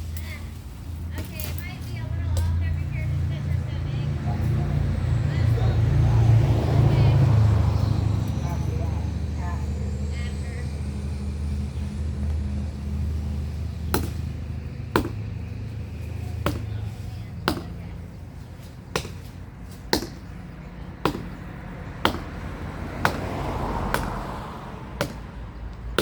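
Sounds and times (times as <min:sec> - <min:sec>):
low engine hum: 0:00.0 - 0:26.0
chopping wood by hand: 0:14.0 - 0:14.3, 0:15.0 - 0:15.3, 0:16.4 - 0:17.9, 0:18.9 - 0:20.4, 0:21.0 - 0:24.4, 0:25.0 - 0:26.0.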